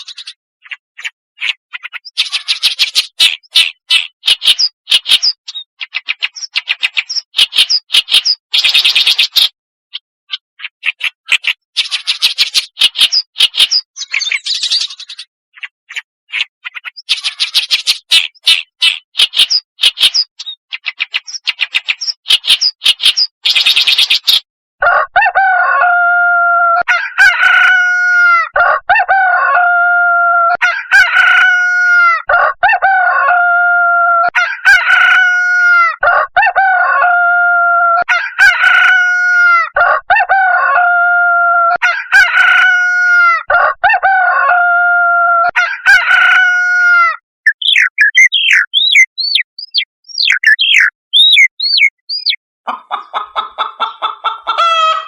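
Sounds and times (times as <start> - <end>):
shrike calling: 47.4 - 53.2.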